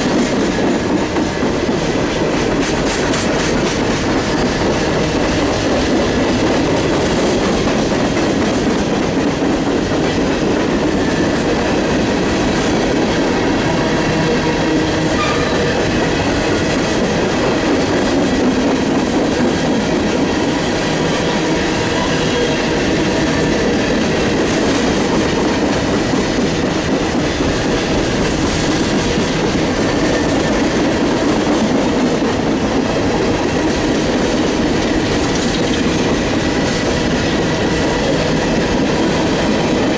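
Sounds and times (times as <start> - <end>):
freight train wheels clattering: 0.0 - 39.9.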